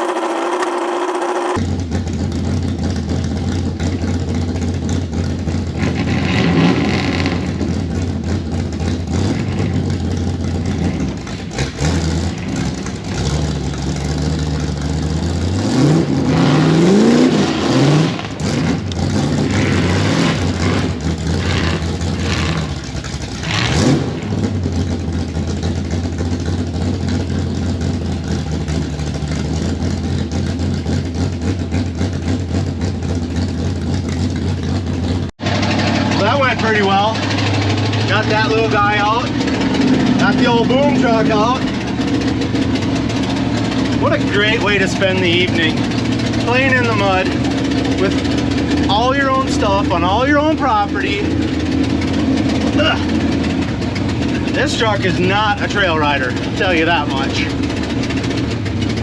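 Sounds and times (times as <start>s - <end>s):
truck engine revving: 0.0s - 1.6s, 11.6s - 24.5s, 35.4s - 59.0s.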